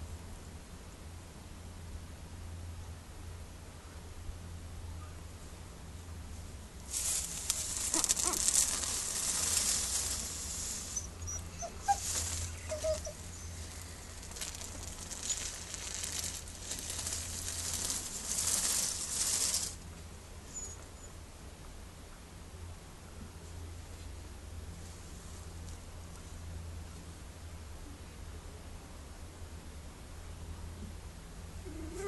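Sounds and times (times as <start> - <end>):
puppies rustling and shuffling: 6.4 - 20.1
puppies squeaking: 7.8 - 16.4.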